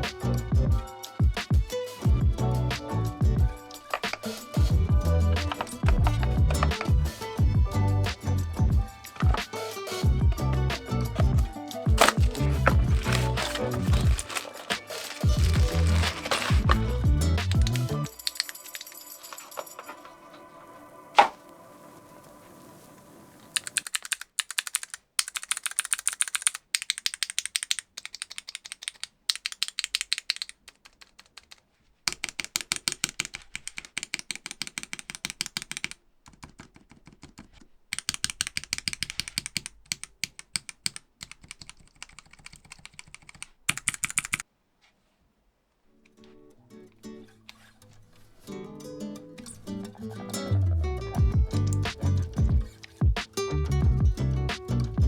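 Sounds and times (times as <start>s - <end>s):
mechanical keyboard key clicks: 23.6s - 44.4s.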